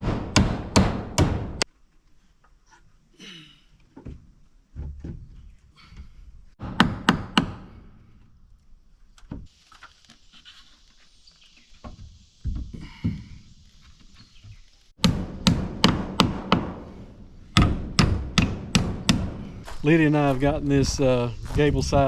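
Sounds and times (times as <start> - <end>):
hammer striking wooden siding: 0.0 - 1.7, 6.6 - 7.9, 15.0 - 19.8.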